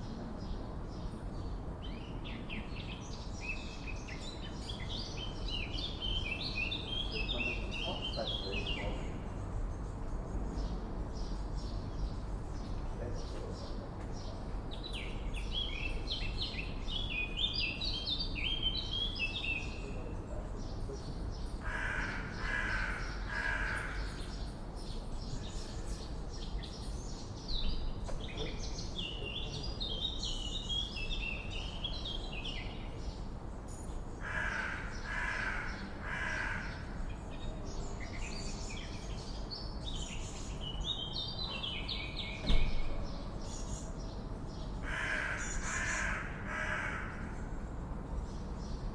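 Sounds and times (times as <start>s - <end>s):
crow cawing: 21.6s - 24.2s, 34.2s - 37.0s, 44.8s - 47.4s
short knock: 42.4s - 43.0s.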